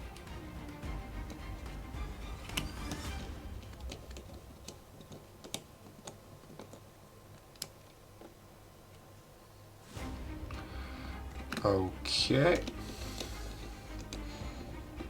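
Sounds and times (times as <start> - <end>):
small parts clicking and tapping: 0.0 - 9.1, 12.5 - 15.0.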